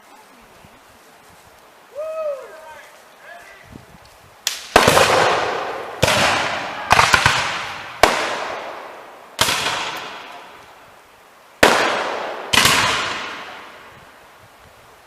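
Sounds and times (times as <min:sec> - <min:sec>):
musket shots echoing: 0:04.6 - 0:10.4, 0:11.6 - 0:13.8.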